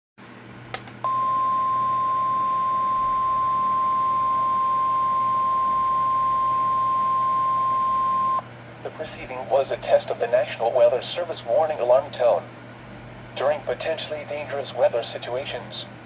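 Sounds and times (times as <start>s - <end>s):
steady high alarm tone: 1.1s - 8.4s
faint radio hiss: 8.8s - 16.0s.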